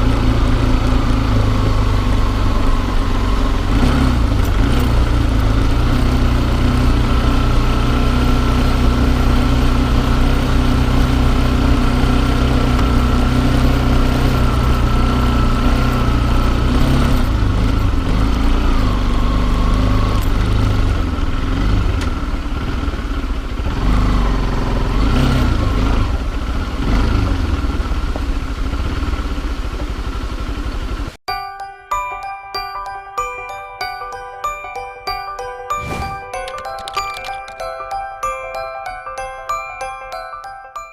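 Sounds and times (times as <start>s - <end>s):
small motorcycle engine running: 0.0s - 31.2s.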